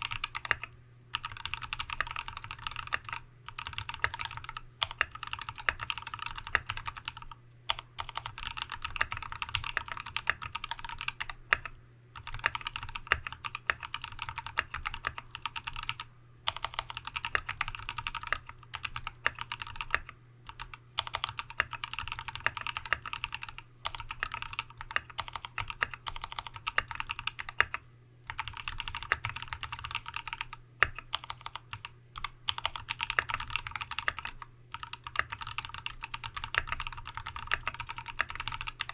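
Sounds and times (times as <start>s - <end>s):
typing on a keyboard: 0.0s - 38.9s.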